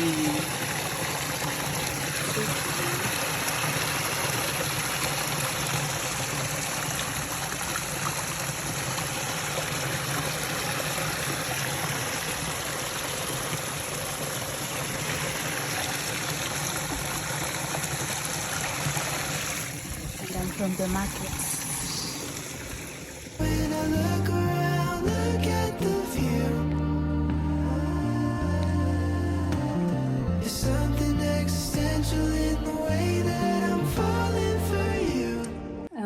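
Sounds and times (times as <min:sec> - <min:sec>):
water running: 0:00.0 - 0:24.4.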